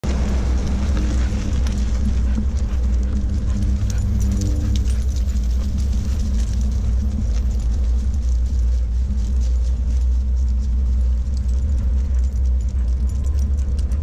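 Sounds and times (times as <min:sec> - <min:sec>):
golf cart rumbling: 0:00.0 - 0:14.0
light jingling and clicking: 0:00.2 - 0:14.0.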